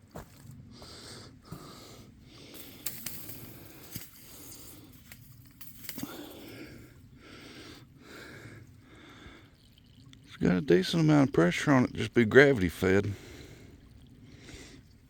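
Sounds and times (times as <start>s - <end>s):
pipe rustling and scraping: 2.5s - 6.5s
water running from pipe: 2.5s - 6.9s, 7.8s - 15.0s.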